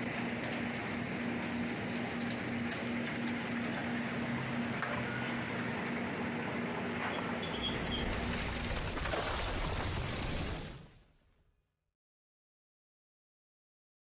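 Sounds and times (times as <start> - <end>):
sawmill machine running: 0.0 - 10.8.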